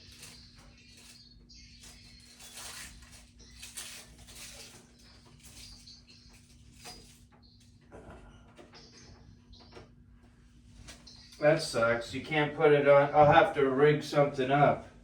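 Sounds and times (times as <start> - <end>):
rustling and light scraping: 0.0 - 7.9, 10.3 - 11.4.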